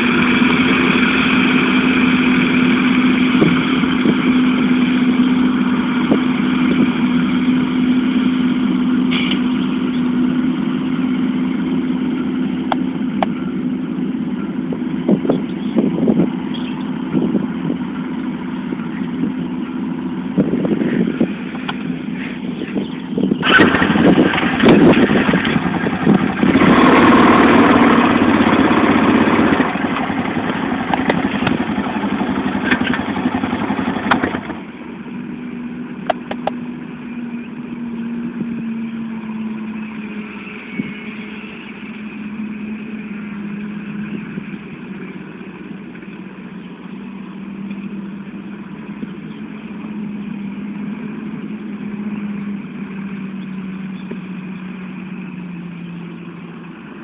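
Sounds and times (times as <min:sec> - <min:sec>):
tractor diesel engine running: 0:00.0 - 0:57.0.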